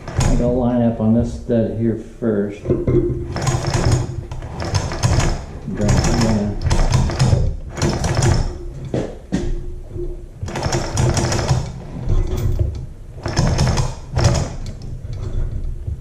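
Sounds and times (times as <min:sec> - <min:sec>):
hoist chain rattling: 0:00.0 - 0:00.8, 0:03.3 - 0:08.7, 0:10.4 - 0:15.9.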